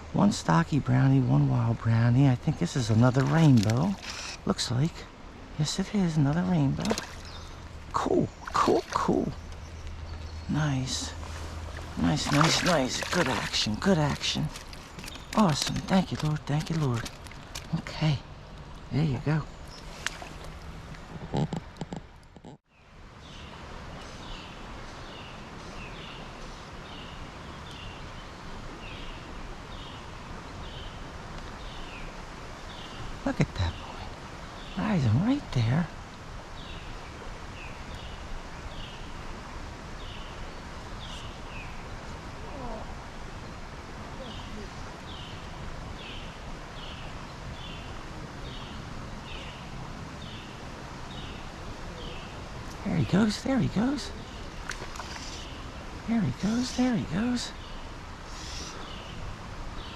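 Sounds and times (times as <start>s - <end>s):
stream flowing: 0.0s - 22.3s, 22.9s - 59.9s
bird calling: 2.8s - 4.9s, 6.0s - 18.2s, 19.0s - 22.6s, 44.2s - 59.9s.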